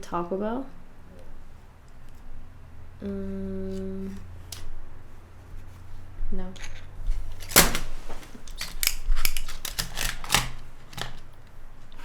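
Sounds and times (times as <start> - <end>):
sharp clicks and snips: 8.5 - 11.2.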